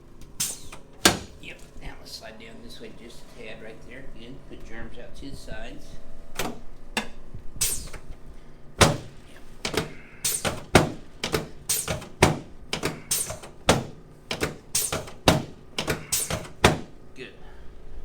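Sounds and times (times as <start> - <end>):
sharp clicks and knocks: 8.8 - 16.9.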